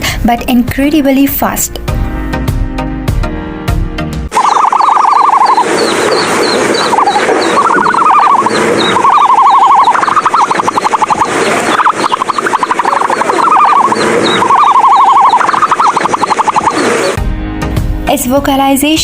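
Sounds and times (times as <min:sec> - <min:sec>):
animal warbling trill: 0:04.3 - 0:17.2.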